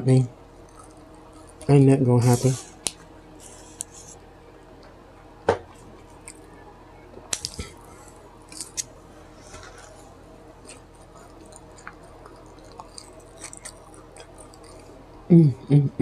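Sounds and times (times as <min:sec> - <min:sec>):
person chewing food: 0:00.5 - 0:01.7, 0:05.7 - 0:06.5, 0:07.3 - 0:15.3.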